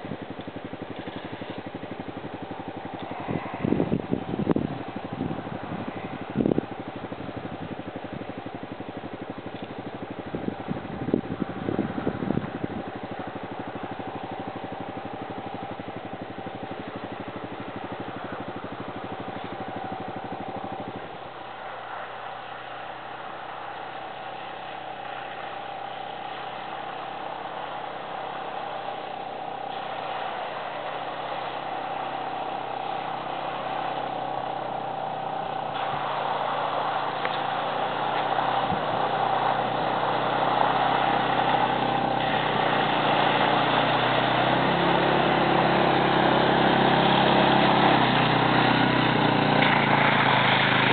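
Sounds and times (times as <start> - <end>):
atv engine running: 0.0 - 50.9.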